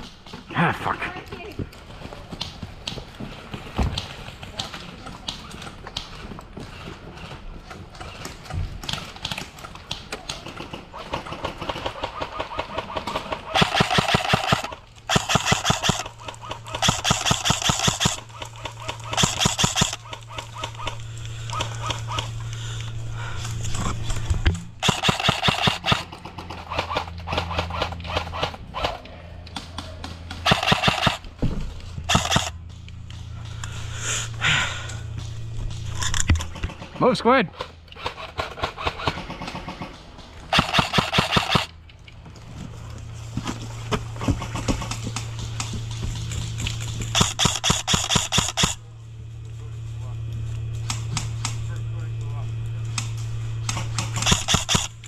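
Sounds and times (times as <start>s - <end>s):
airsoft rifles firing rapid bursts: 8.0s - 22.4s, 24.8s - 29.0s, 29.7s - 31.3s, 32.0s - 32.6s, 36.4s - 41.8s, 44.3s - 45.8s, 46.7s - 48.8s, 53.0s - 55.0s.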